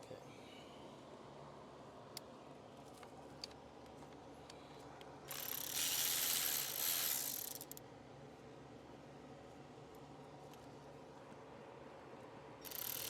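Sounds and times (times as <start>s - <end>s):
ratchet tool clicking: 5.3s - 7.8s, 12.6s - 13.0s.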